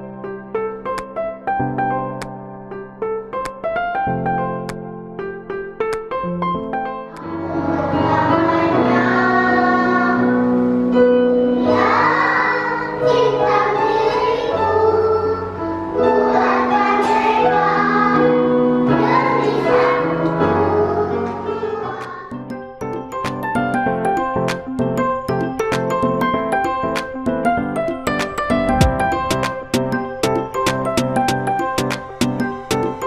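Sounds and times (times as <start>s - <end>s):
keyboard accompaniment: 0.0s - 33.0s
children's choir singing: 7.2s - 22.4s.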